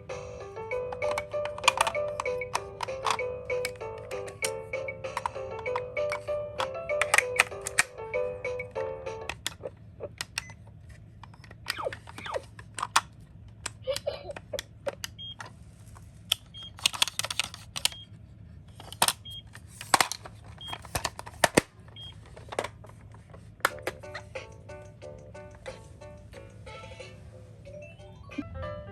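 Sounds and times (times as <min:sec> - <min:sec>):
background music: 0:00.0 - 0:09.6, 0:23.7 - 0:28.9
toy cars clattering in a box: 0:18.8 - 0:23.9.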